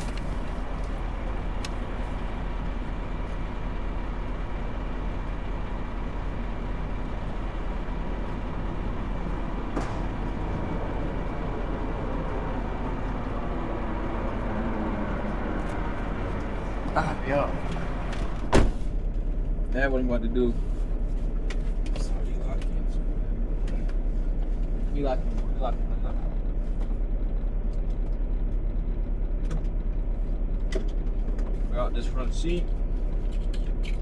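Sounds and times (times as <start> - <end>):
diesel engine idling: 0.0 - 34.0.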